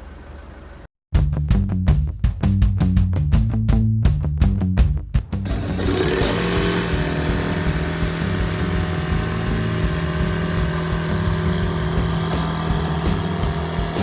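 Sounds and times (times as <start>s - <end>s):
background music: 5.2s - 14.0s
circular saw running: 5.4s - 14.0s.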